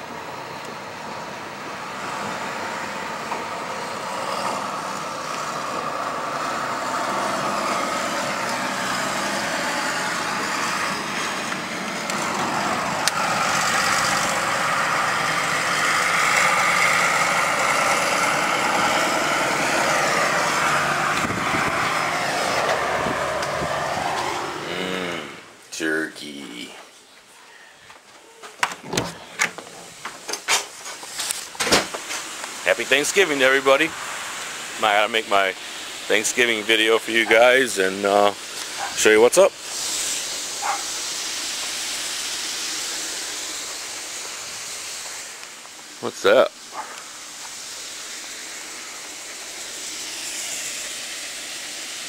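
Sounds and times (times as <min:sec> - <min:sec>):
pickup truck engine running: 0:03.4 - 0:24.4.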